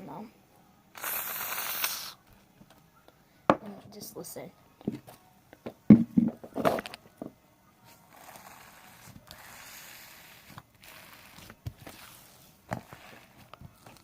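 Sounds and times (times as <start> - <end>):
spray hissing: 1.0 - 2.2.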